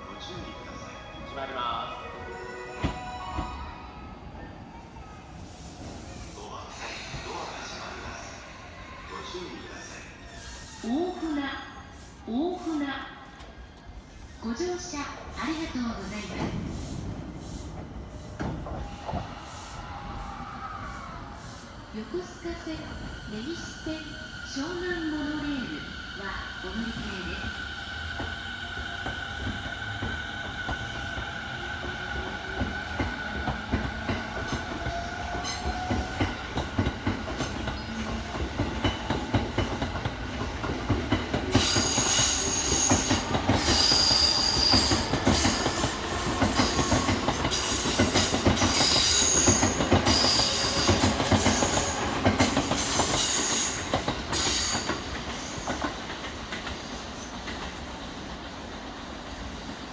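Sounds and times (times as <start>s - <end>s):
wheels squealing on rail: 5.4s - 14.6s, 22.7s - 40.0s, 41.1s - 56.1s.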